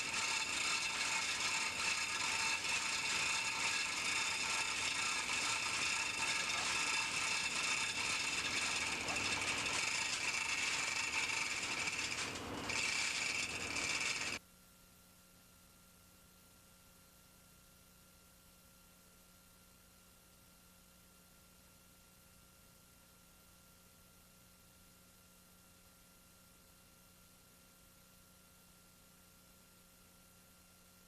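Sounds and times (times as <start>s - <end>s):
machinery running: 0.0s - 14.4s.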